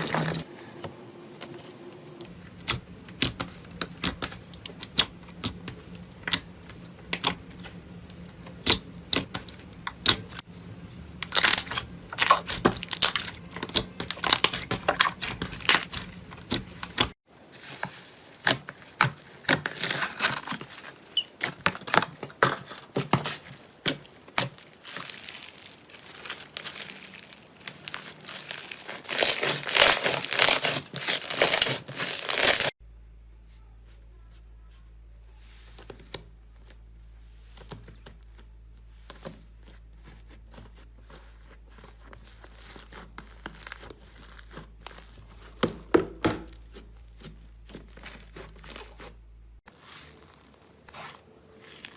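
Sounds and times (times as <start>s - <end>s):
low steady hum: 0.0s - 51.9s
slime crackling and popping: 18.4s - 32.7s.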